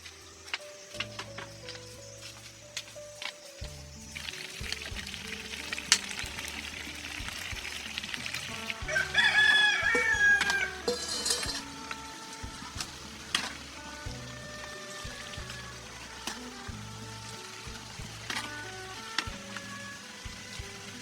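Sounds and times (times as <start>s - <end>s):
scattered crackles: 0.0s - 9.0s
rooster crowing: 8.6s - 12.2s.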